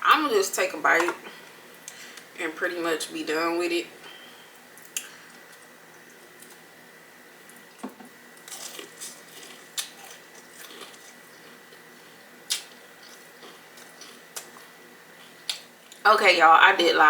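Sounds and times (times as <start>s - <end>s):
chewing crispy fried chicken: 8.4s - 16.0s.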